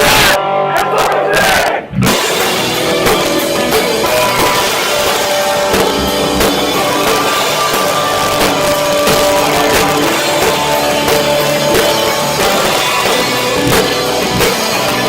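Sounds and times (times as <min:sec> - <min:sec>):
distorted electric guitars: 0:00.0 - 0:15.0
drum kit: 0:00.0 - 0:15.0
live rock band playing: 0:01.9 - 0:15.0.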